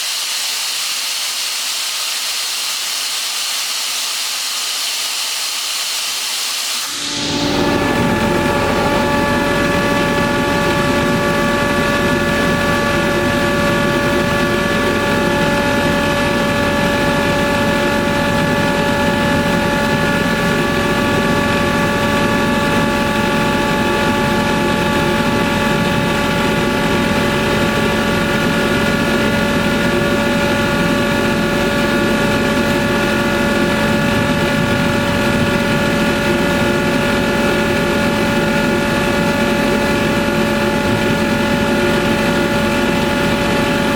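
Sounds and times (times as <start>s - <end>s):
air compressor hum and whine: 0.0s - 43.9s
rush of air: 6.8s - 29.4s.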